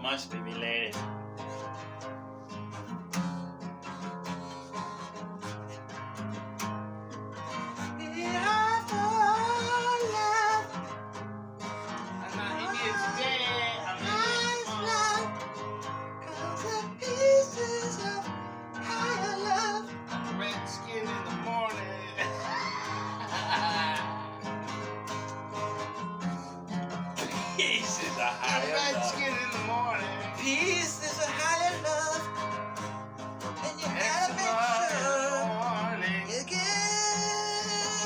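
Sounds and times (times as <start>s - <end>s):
strummed acoustic guitar: 0.0s - 38.0s
person singing: 7.9s - 10.8s, 12.2s - 24.7s, 27.2s - 32.5s, 33.6s - 38.0s.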